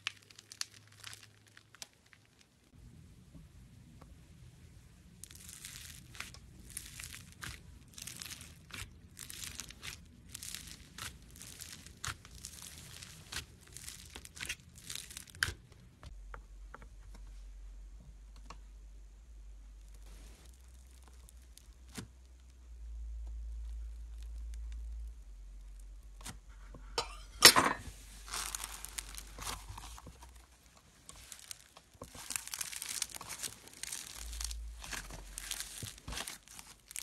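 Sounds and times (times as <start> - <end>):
foam slime crackling: 0.0 - 2.7, 5.1 - 15.7, 27.9 - 37.0
low steady hum: 2.6 - 37.0.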